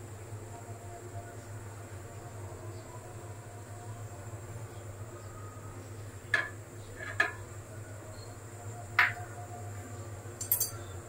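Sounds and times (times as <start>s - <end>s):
utensil clinking against cookware: 9.0s - 9.2s, 10.4s - 10.9s.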